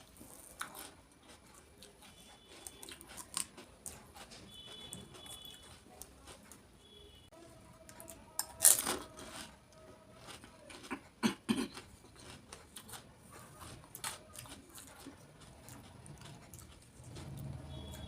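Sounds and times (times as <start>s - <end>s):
crunching bite: 8.4s - 9.5s
chewing clicks: 11.7s - 18.0s.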